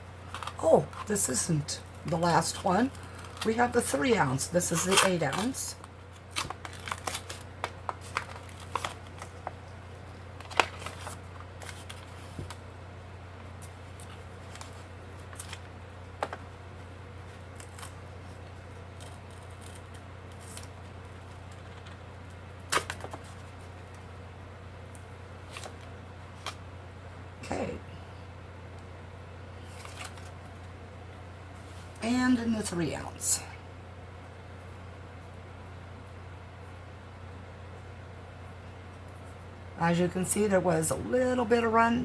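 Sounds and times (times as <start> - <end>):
silicone mold peeling crackles: 0.2 - 12.8, 13.4 - 24.2.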